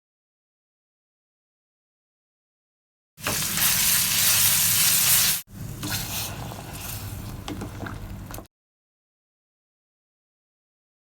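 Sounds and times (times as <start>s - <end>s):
food sizzling in hot oil: 3.2s - 7.5s.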